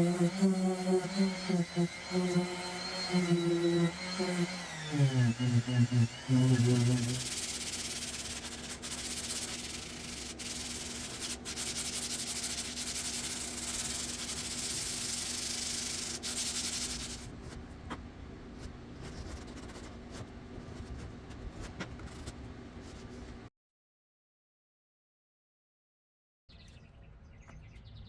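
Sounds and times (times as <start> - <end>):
sanding hiss: 0.0 - 17.3.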